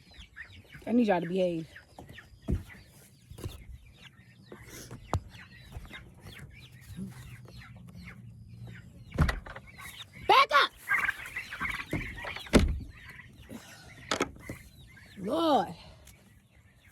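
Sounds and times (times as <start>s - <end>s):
chickens clucking: 0.0s - 16.9s.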